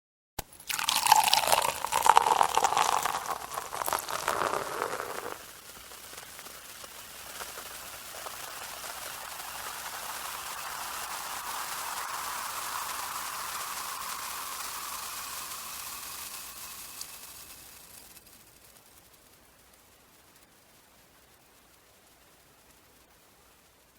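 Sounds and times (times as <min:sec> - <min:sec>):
crackling fizz of bubbles: 0:00.4 - 0:23.9
champagne gushing and splashing: 0:00.6 - 0:05.4.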